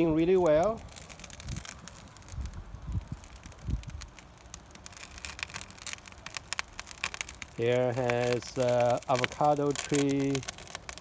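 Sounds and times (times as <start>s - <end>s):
wind rumble on microphone: 0.0s - 4.5s
sharp pops from fire: 0.0s - 11.0s
wood fire crackling: 0.0s - 11.0s.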